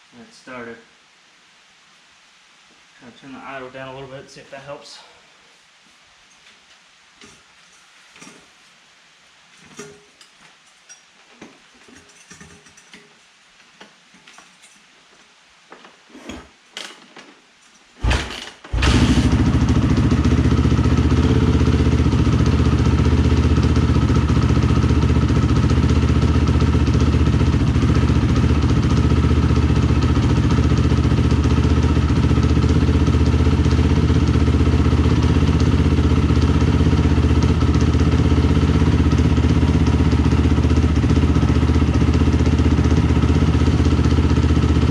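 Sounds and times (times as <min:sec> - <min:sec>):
faint clicks and knocks: 0:09.6 - 0:17.9
motorcycle engine starting and idling: 0:18.0 - 0:44.9.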